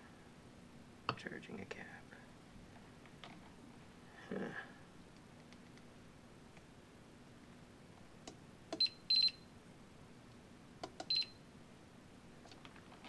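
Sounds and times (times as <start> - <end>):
multimeter beeping: 8.8 - 9.5, 11.0 - 11.4
test probes clicking: 10.8 - 11.3.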